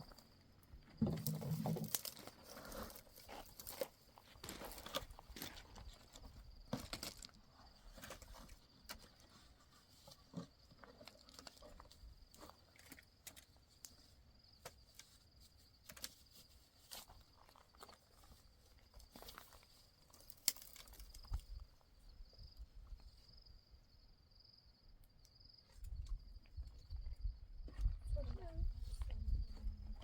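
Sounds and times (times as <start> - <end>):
faint clicks and rustles: 1.2 - 21.8.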